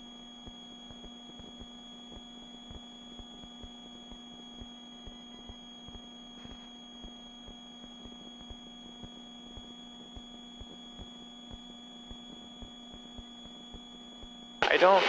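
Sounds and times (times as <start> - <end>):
helicopter cabin hum: 14.6 - 15.0.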